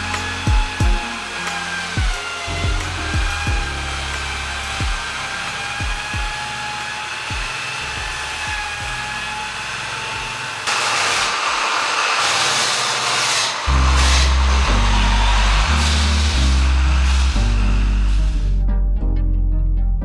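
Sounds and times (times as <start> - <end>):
electronic music with bass thumps: 0.0 - 6.6, 7.3 - 9.2, 13.7 - 20.0
power tool whining: 0.0 - 18.4
hissing grinding noise: 0.0 - 18.6.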